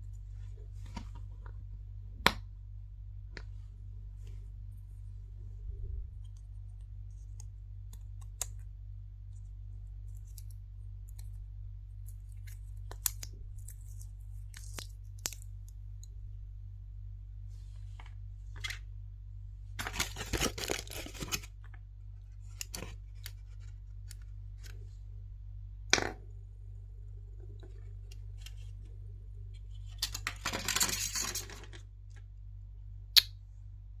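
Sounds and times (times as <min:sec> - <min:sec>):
low hum: 0:00.0 - 0:34.0
plastic wrapping crinkling: 0:19.8 - 0:21.5.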